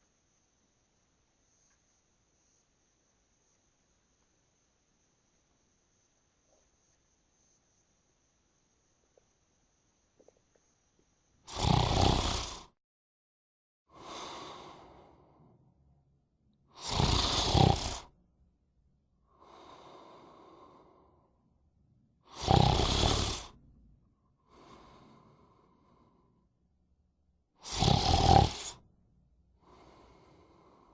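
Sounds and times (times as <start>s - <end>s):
loud rasping snores: 11.5s - 12.8s, 16.7s - 18.2s, 22.3s - 23.6s, 27.6s - 28.8s, 29.6s - 30.9s
quiet breath out: 13.9s - 15.6s, 19.2s - 21.4s, 24.4s - 26.5s, 29.6s - 30.9s.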